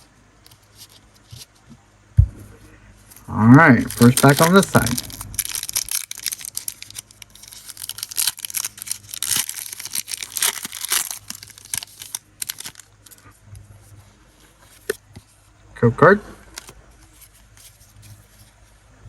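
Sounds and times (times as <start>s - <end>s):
foil wrapper tearing and crinkling: 3.7s - 13.2s.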